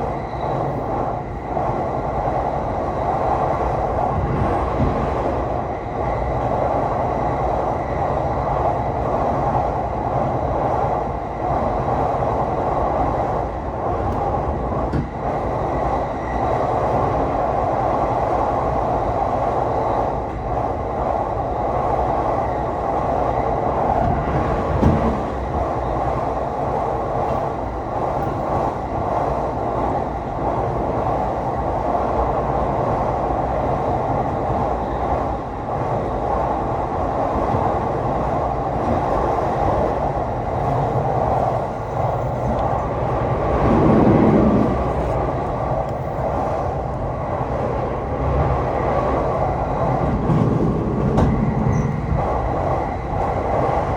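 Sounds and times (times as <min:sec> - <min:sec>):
train wheels and motors rumbling: 0:00.0 - 0:53.9.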